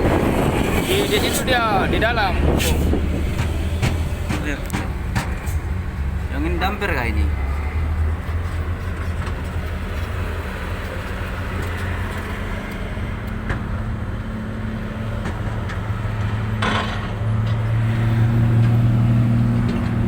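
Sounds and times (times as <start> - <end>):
excavator diesel engine running: 0.0 - 20.0.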